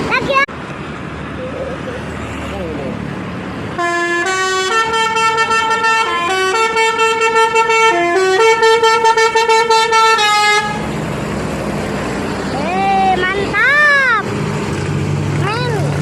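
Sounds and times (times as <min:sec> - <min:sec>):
bus engine running: 0:00.0 - 0:16.0
musical air horn playing tune: 0:03.8 - 0:10.8.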